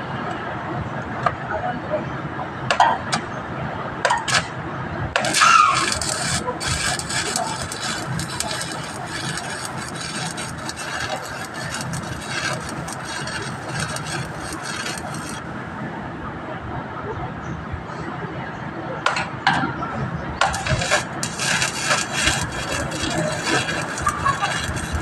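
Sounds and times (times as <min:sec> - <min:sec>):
welding arc crackling: 0:05.2 - 0:15.6, 0:20.4 - 0:25.0.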